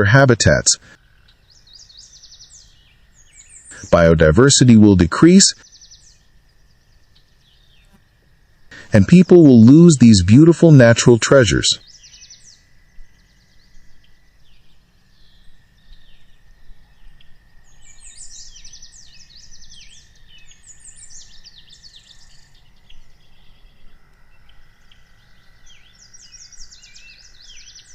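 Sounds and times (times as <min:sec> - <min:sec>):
small birds chirping: 0:00.0 - 0:27.9.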